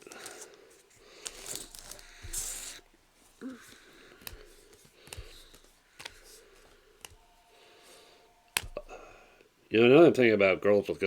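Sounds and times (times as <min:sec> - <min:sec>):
cards rustling on a table: 0:00.0 - 0:07.2.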